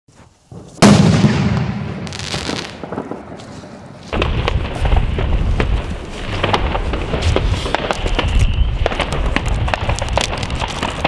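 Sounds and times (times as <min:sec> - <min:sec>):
fireworks crackling: 0:00.4 - 0:11.0
firework bang: 0:00.6 - 0:03.5
sharp firework cracks: 0:00.6 - 0:11.0.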